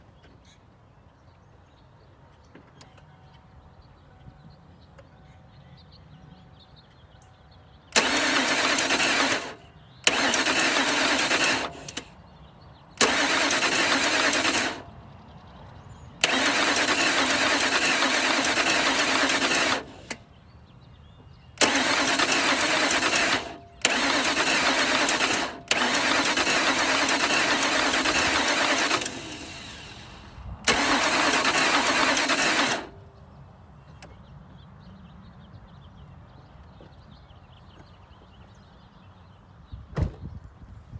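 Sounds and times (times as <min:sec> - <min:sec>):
car engine cranking: 0:08.0 - 0:12.1, 0:13.0 - 0:14.9, 0:16.2 - 0:20.2, 0:21.6 - 0:33.0.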